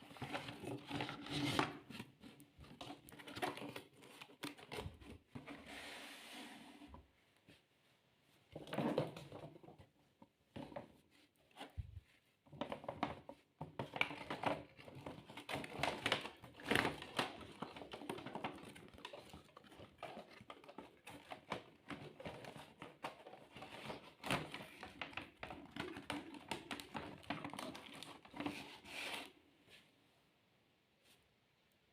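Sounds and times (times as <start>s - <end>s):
plastic toys clicking and rattling: 13.6s - 28.6s.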